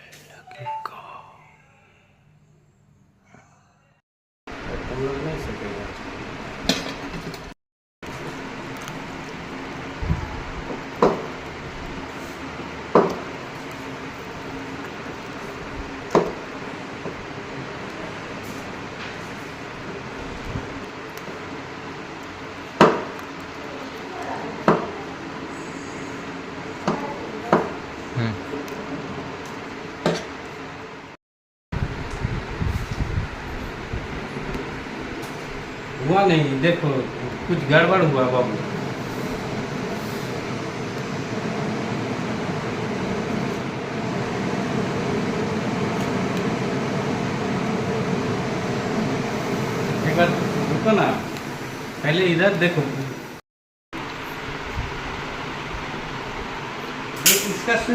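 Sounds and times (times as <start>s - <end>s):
range hood fan running: 4.5s - 7.5s, 8.1s - 31.2s, 31.8s - 53.4s, 54.0s - 57.9s
steady background noise: 8.1s - 31.2s, 31.8s - 53.4s.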